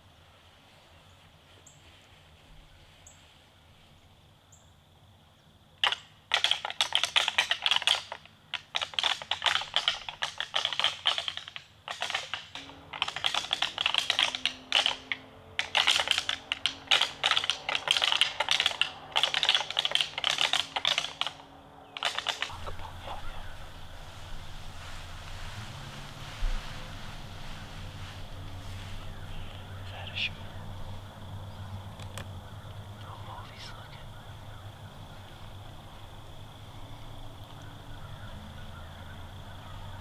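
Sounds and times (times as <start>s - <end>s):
antlers clacking together: 5.8s - 31.2s.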